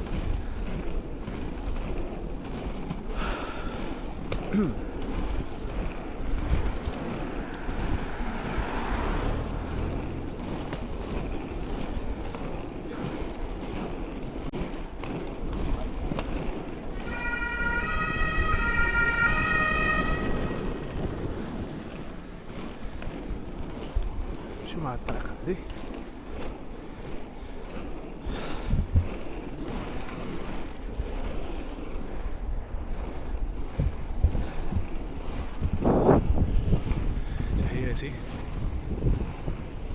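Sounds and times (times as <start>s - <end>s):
wind on microphone: 0.0s - 24.6s, 26.0s - 39.9s
skate wheels rolling on rough path: 0.0s - 39.9s
high steady tones: 17.0s - 21.7s.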